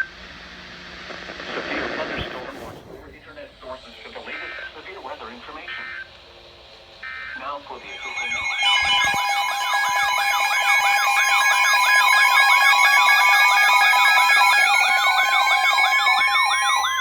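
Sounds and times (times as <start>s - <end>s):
siren-like alert wails: 7.1s - 17.0s
steady held alert tones: 7.1s - 17.0s.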